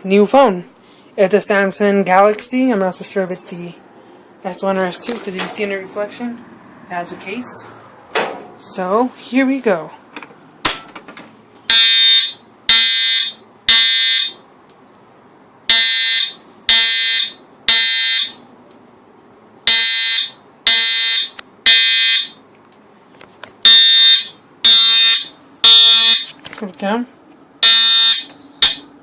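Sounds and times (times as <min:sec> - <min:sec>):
fire alarm horn blasts: 0:11.7 - 0:14.4, 0:15.7 - 0:18.4, 0:19.6 - 0:22.4, 0:23.6 - 0:26.3, 0:27.6 - 0:28.9.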